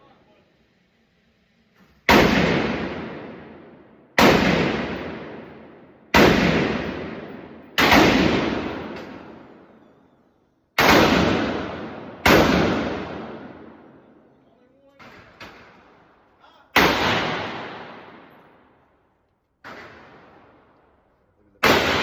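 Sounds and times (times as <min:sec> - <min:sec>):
gunshots: 0:02.0 - 0:09.8, 0:10.8 - 0:14.1, 0:15.0 - 0:18.7, 0:19.6 - 0:20.8, 0:21.6 - 0:22.0.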